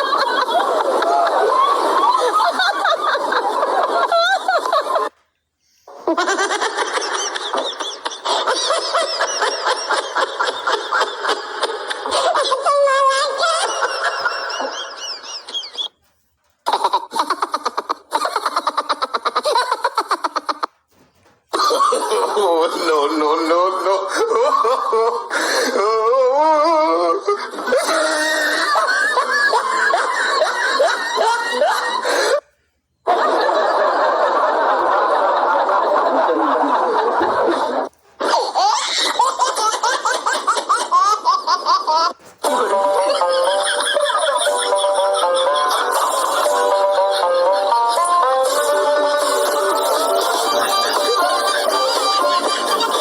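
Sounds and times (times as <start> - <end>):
rapid staccato laugh: 5.9 - 15.9, 16.6 - 20.9, 33.1 - 53.0
squeaky wavering giggle: 5.9 - 20.9, 37.2 - 53.0.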